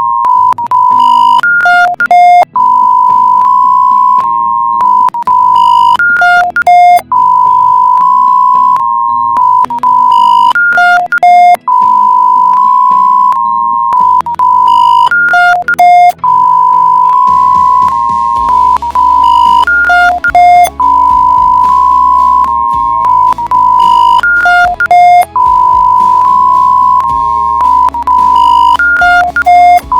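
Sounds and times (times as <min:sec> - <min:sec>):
electronic alert alarm tone and beeps: 0:00.0 - 0:29.9
noisy rumble: 0:16.2 - 0:29.9.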